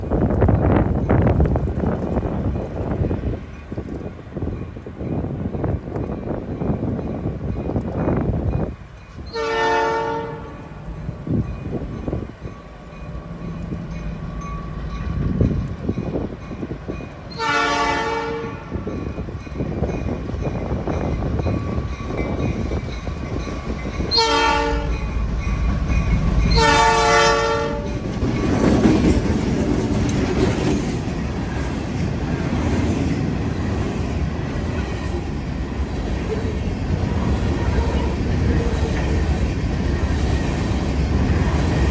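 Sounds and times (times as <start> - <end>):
train rumbling past: 0.0 - 41.9
diesel locomotive horn blasts: 9.2 - 10.8, 17.3 - 18.9, 24.1 - 25.0, 26.5 - 28.0
wheel clatter on rails: 27.8 - 41.9.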